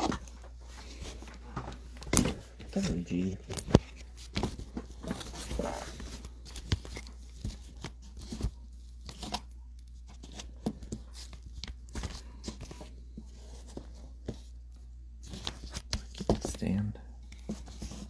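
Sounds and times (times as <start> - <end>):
packaging crinkling and tearing: 1.9 - 12.2.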